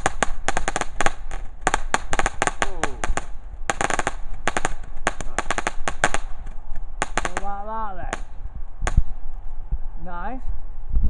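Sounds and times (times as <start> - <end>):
fireworks bangs and cracks: 0.0 - 9.2.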